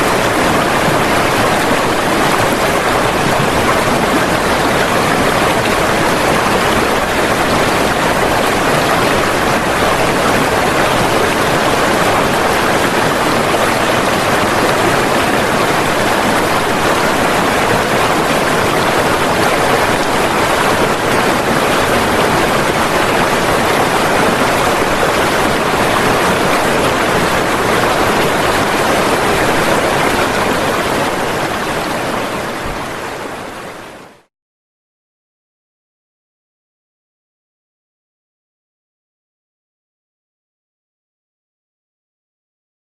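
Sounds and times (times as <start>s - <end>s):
rushing floodwater: 0.0s - 34.3s.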